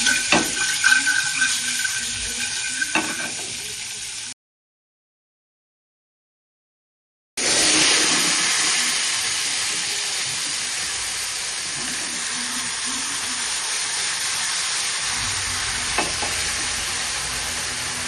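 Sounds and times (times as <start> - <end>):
curry sizzling in a hot pan: 0.0 - 4.4, 7.4 - 18.0
knock: 16.0 - 16.4.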